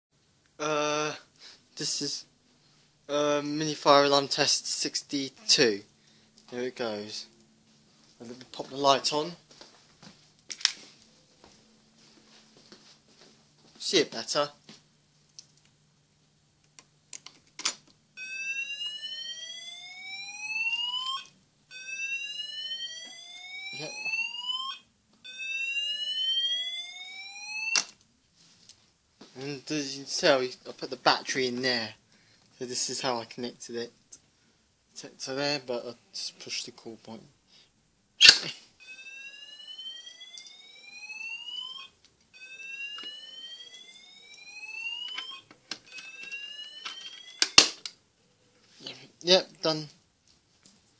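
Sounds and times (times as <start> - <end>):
fire alarm rising whoop tone: 18.2 - 28.0, 38.8 - 47.8.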